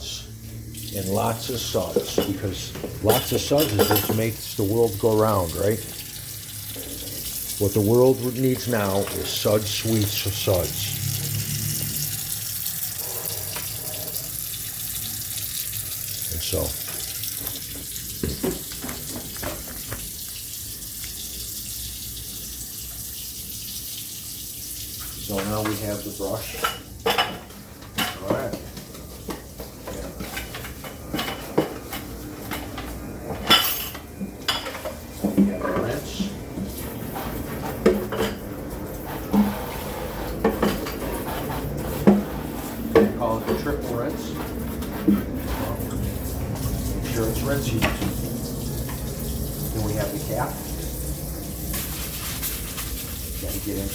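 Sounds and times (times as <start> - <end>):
faucet running into sink: 0.4 - 27.5, 29.2 - 53.9
dishes clattering: 1.9 - 4.8, 16.8 - 20.1, 26.4 - 43.6.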